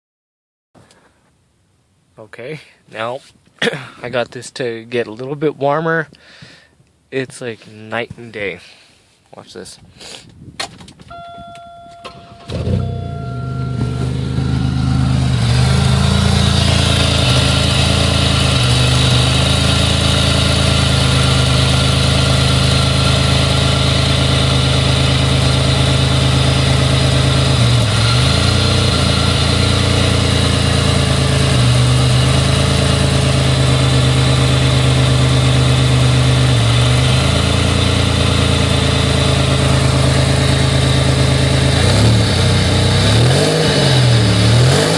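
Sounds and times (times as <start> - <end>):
car engine starting and idling: 10.8 - 44.9
short electronic tone: 11.1 - 16.4.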